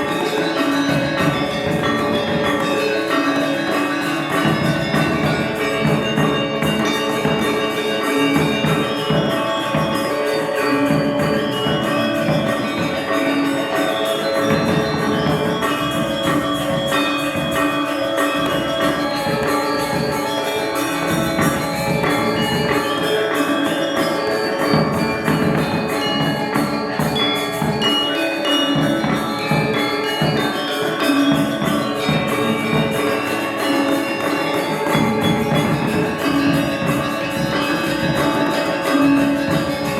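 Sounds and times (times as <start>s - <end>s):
gamelan ensemble playing: 0.0s - 39.9s.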